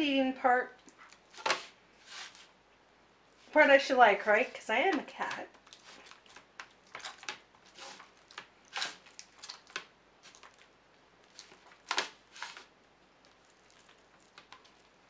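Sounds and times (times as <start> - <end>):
sticky dough kneaded by hand: 3.2 - 15.0.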